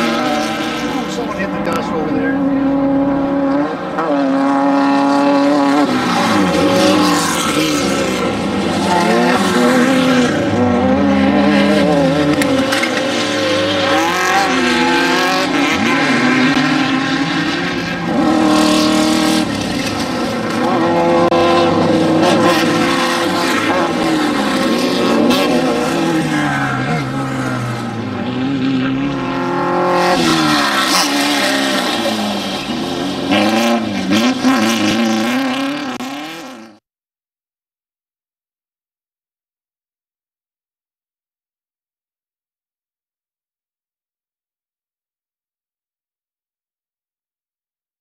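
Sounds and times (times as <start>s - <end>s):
race vehicle engines revving: 0.0s - 36.8s.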